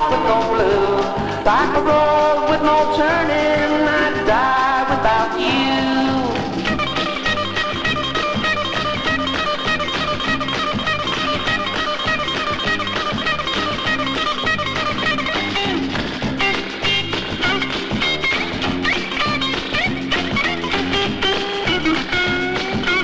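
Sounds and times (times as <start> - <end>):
bass line: 0.0 - 23.0
drums: 0.0 - 23.0
lead guitar melody: 6.7 - 23.0.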